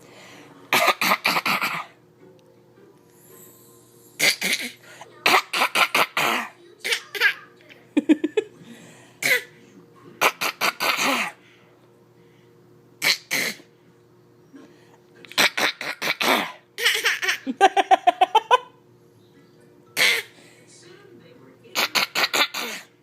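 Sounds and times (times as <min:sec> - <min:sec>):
person fake-coughing: 0:00.7 - 0:02.0, 0:04.2 - 0:07.4, 0:09.2 - 0:09.5, 0:10.2 - 0:11.4, 0:13.0 - 0:13.7, 0:15.4 - 0:17.2, 0:20.0 - 0:20.3, 0:21.8 - 0:22.9
person laughing: 0:08.0 - 0:08.5, 0:17.4 - 0:18.7.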